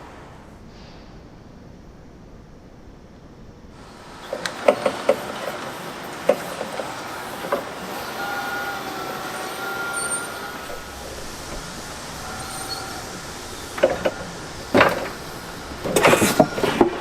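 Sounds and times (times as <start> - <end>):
two-tone machine whine: 1.7 - 17.0
sharp knocks and clatter: 3.8 - 17.0.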